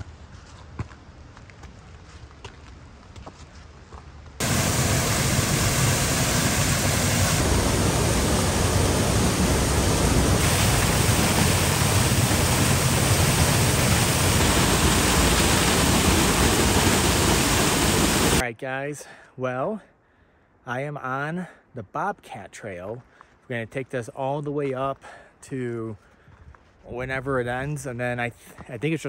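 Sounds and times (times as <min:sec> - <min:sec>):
waterfall roaring: 0:04.4 - 0:18.4.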